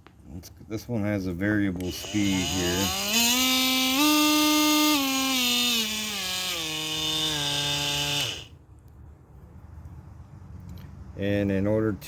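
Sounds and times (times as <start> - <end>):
oscillating multi-tool running: 1.8 - 8.5.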